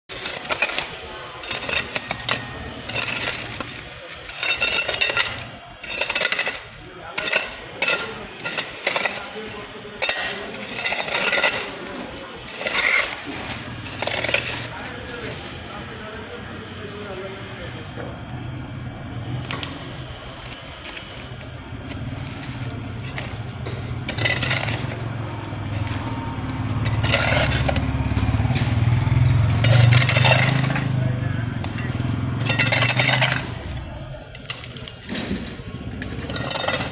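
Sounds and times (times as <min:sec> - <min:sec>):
hard objects clinking and scraping: 0:00.1 - 0:15.7, 0:19.4 - 0:36.9
machine engine running: 0:20.0 - 0:36.9.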